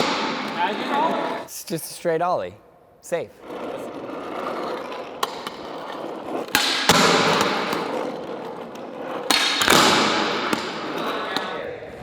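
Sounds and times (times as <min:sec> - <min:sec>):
skateboard hitting the ground: 0:00.0 - 0:01.2, 0:04.3 - 0:11.6
skateboard wheels rolling: 0:03.4 - 0:12.0.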